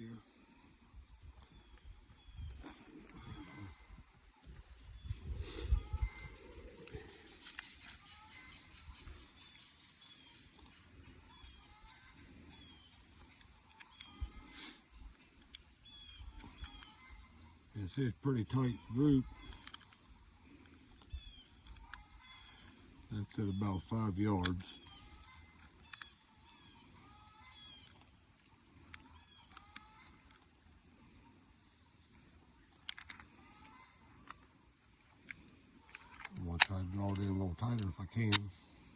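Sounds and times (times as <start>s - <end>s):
bird chirps: 0.0s - 30.3s
insect chorus: 0.0s - 38.9s
sharp light clicks: 35.9s - 38.6s.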